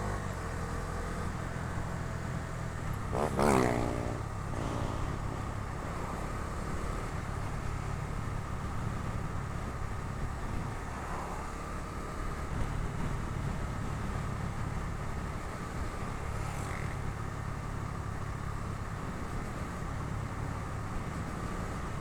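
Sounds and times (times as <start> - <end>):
motorcycle engine running: 1.1 - 5.8.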